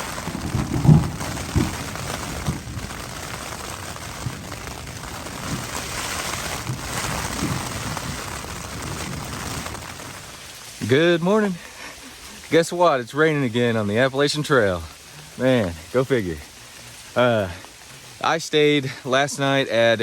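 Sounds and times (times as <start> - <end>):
heavy raindrops thudding: 0.0 - 12.4
steady rain falling: 0.0 - 20.0.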